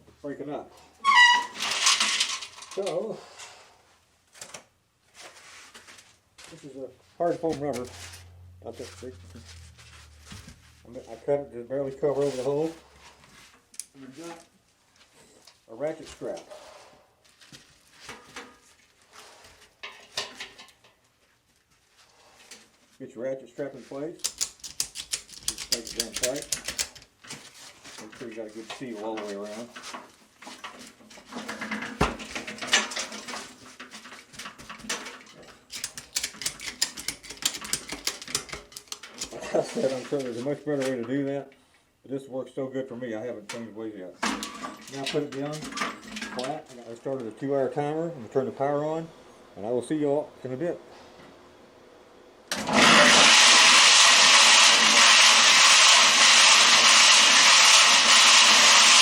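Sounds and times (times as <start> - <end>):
cement mixer rattling with shot: 1.5 - 2.8, 24.3 - 27.1, 34.2 - 39.3, 52.5 - 59.0
ratchet strap rapid clicks: 24.2 - 27.1, 35.7 - 39.3.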